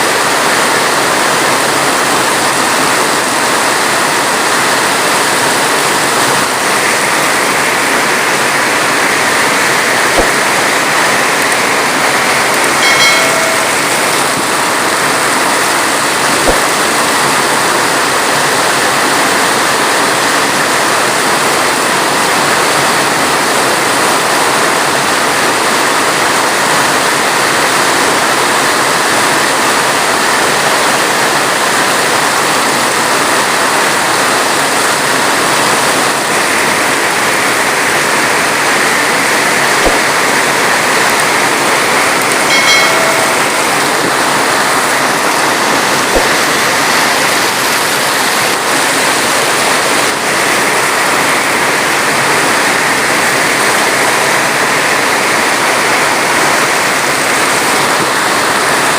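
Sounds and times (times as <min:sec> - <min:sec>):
heavy rain hissing: 0:00.0 - 0:58.9
faint pitched sound: 0:10.1 - 0:15.2, 0:42.4 - 0:47.9.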